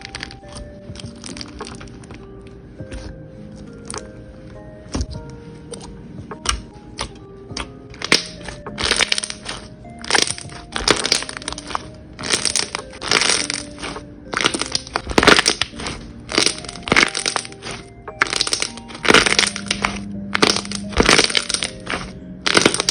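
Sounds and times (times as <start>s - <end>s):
slime crackling crunches: 0.0s - 2.2s, 2.9s - 4.1s, 4.9s - 22.9s
soft background music: 0.0s - 22.9s.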